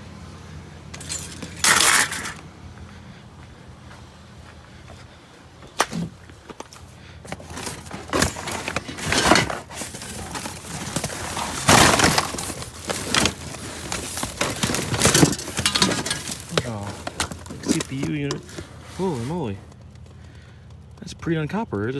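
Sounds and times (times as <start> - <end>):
scrap clattering and scraping: 0.9 - 2.5, 5.0 - 20.6.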